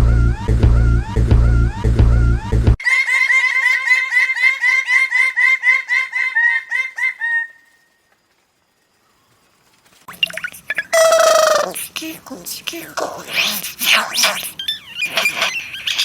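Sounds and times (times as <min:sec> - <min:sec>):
music: 0:00.0 - 0:02.8
chicken clucking: 0:10.1 - 0:16.0.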